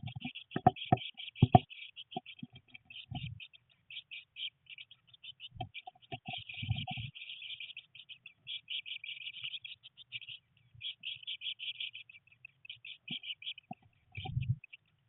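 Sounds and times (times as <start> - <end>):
low thumps inside nest box: 0.0 - 1.7
nestlings chirping: 0.0 - 15.0.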